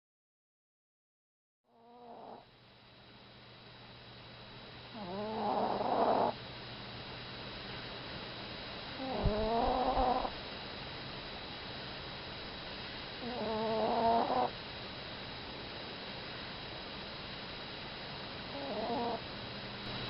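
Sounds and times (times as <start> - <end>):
small dog snoring: 1.7 - 2.5, 4.9 - 6.4, 8.9 - 10.4, 13.2 - 14.6, 18.5 - 19.2.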